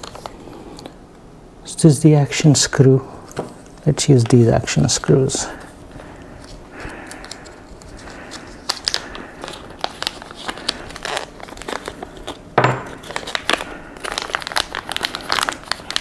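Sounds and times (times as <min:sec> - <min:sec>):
plastic bag crinkling: 0:04.1 - 0:16.0.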